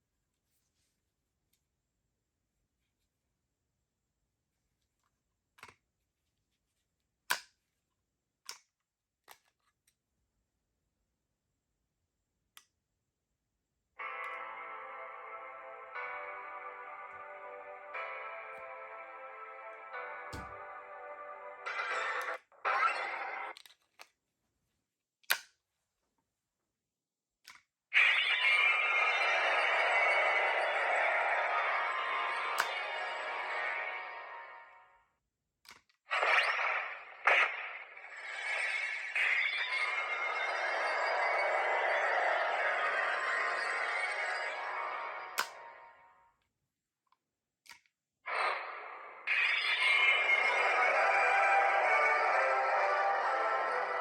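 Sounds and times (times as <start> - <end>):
plastic toy clicks and snaps: 7.3 - 7.6, 25.2 - 25.6
toy electronic sound effects: 28.0 - 34.9, 36.1 - 46.0, 48.3 - 54.0.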